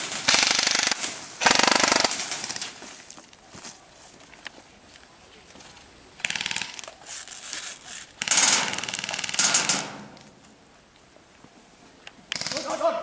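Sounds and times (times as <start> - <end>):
airsoft guns firing in rapid bursts: 0.0 - 2.8, 6.2 - 7.0, 8.2 - 10.1, 12.3 - 13.0.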